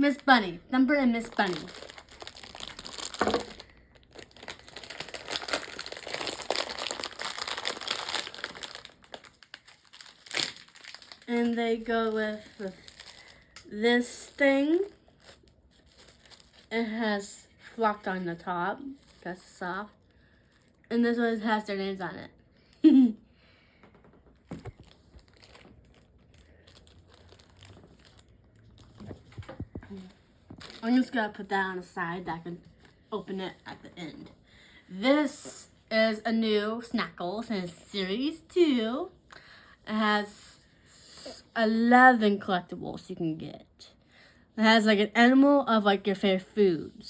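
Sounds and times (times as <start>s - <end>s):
plastic packaging crinkling: 0.0s - 13.7s, 14.3s - 16.7s, 24.4s - 31.4s.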